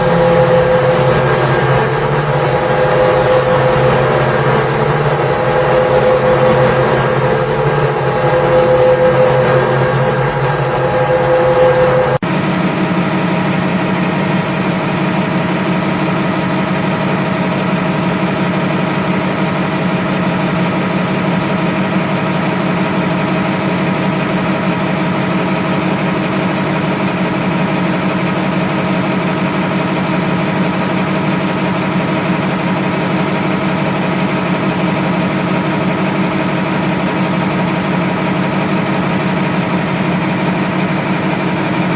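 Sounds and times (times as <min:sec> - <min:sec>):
engine idling: 0:00.0 - 0:41.9
higher-pitched engine: 0:00.0 - 0:41.9.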